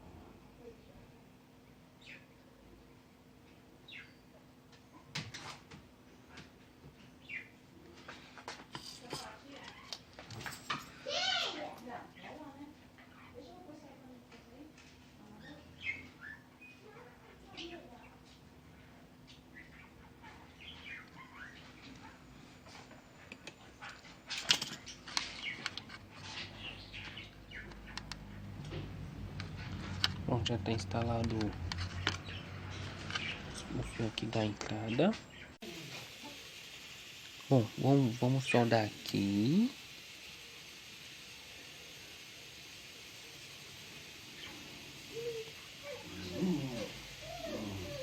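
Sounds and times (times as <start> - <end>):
faint electrical hum: 0.0 - 48.0
small bird chirping: 2.0 - 2.3, 3.8 - 4.3, 7.2 - 7.6, 15.3 - 18.4, 19.2 - 22.8, 24.8 - 28.5, 43.3 - 48.0.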